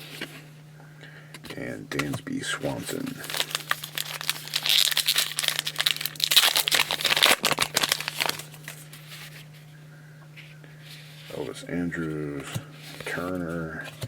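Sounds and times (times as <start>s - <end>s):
foil wrapper crinkling: 2.8s - 9.4s.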